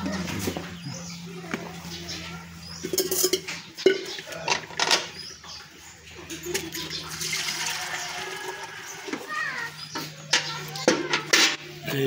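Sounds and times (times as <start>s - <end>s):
milk squirting into container: 7.2s - 9.1s.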